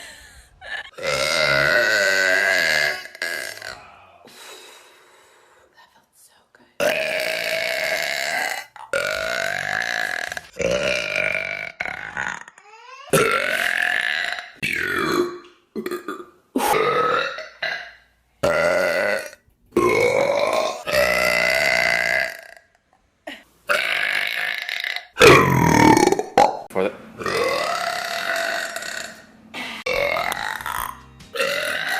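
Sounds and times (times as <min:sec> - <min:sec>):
person burping: 0:00.7 - 0:04.1, 0:06.8 - 0:31.9.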